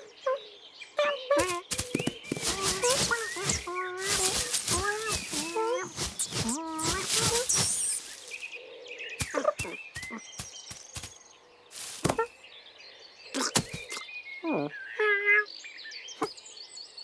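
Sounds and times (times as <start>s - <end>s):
faint high chirps: 1.4s - 8.5s.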